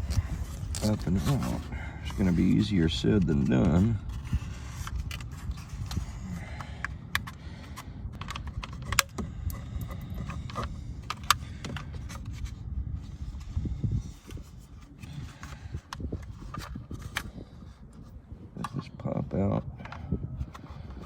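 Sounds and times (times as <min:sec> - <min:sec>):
plastic panel scraping: 0:00.0 - 0:06.0.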